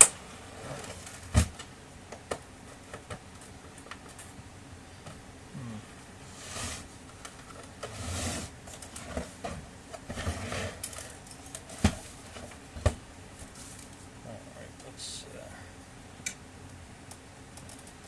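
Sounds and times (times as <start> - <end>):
scraping and rustling on plastic: 0.5 - 1.5, 6.3 - 14.1.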